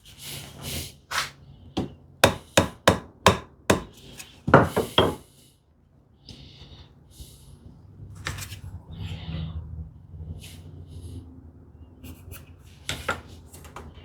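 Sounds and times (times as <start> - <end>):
hammer striking wood: 1.8 - 5.2.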